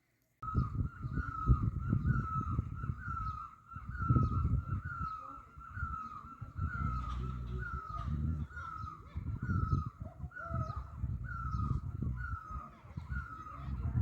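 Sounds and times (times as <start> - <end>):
bird calling: 0.4 - 14.0
low rumble: 6.7 - 8.6.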